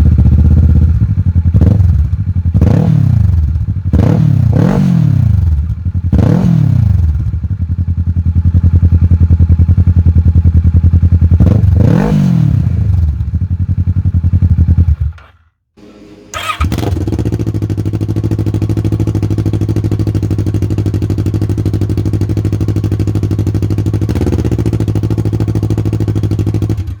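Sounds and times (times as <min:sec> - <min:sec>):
motorcycle engine idling and revving: 0:00.0 - 0:27.0.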